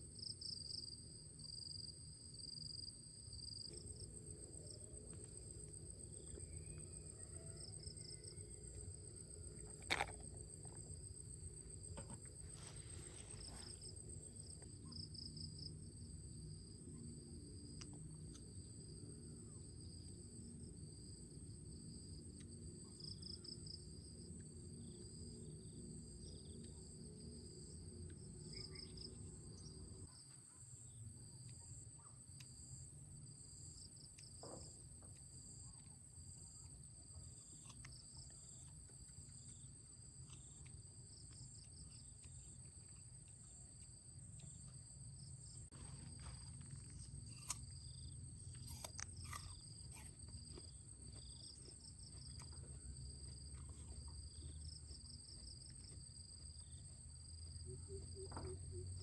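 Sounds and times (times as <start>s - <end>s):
insects chirring: 1.5s - 16.6s, 35.3s - 59.0s.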